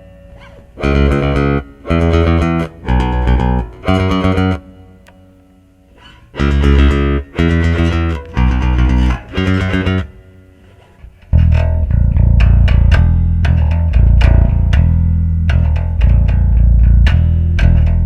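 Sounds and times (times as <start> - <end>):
electric bass guitar: 0.0 - 18.0.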